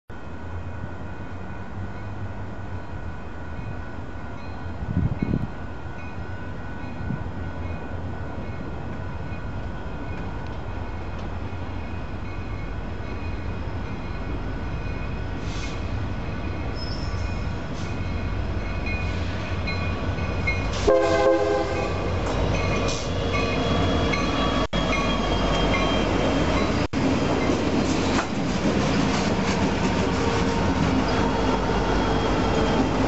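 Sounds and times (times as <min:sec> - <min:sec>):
freight train rumbling: 0:00.1 - 0:33.0.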